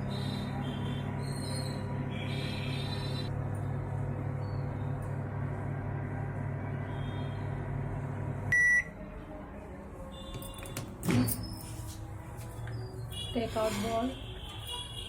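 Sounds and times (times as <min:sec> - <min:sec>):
microwave oven humming: 0:00.0 - 0:09.1
microwave high beep: 0:08.5 - 0:08.9.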